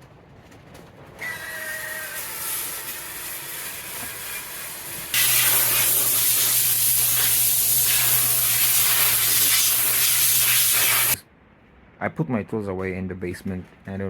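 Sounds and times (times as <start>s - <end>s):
power tool brush scrubbing wood: 1.2s - 11.2s.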